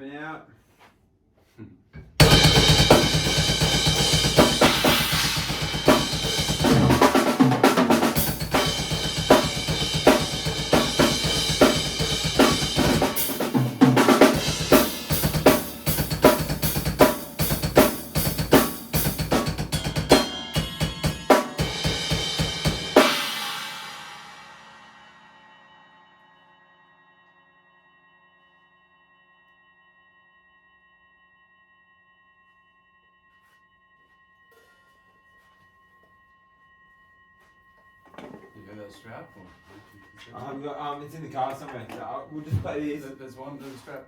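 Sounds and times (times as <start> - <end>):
drum kit playing: 2.2 - 25.4
cymbals ringing: 2.2 - 26.6.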